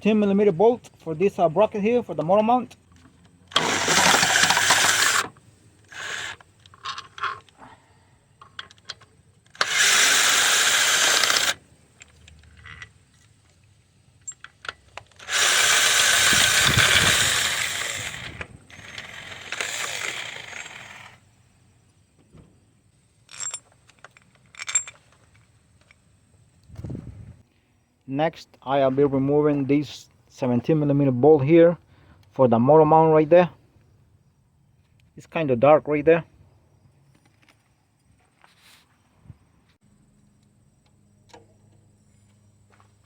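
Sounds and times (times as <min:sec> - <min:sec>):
cordless impact wrench running: 0:03.5 - 0:06.4, 0:09.5 - 0:11.6, 0:15.0 - 0:21.2
metallic clinks of bolts: 0:14.2 - 0:15.2, 0:23.2 - 0:26.0.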